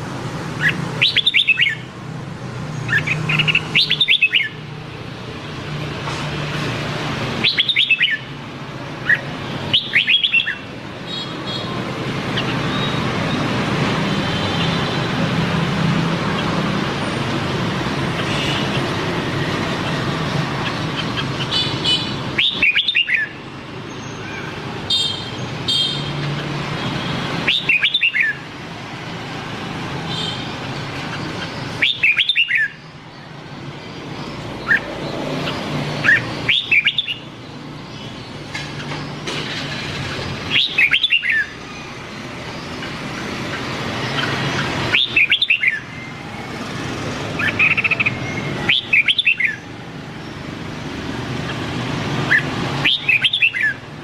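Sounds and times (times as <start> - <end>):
background road noise: 0.0 - 54.0
bird singing warbling phrases: 0.6 - 1.9, 2.8 - 4.6, 7.4 - 8.3, 9.0 - 13.5, 20.6 - 26.2, 27.4 - 28.4, 31.0 - 39.0, 40.4 - 46.2, 47.2 - 50.6, 51.4 - 53.8.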